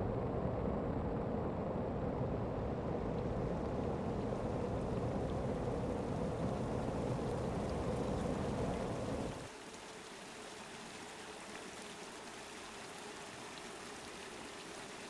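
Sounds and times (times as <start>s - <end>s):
steady rushing noise: 0.0s - 9.5s.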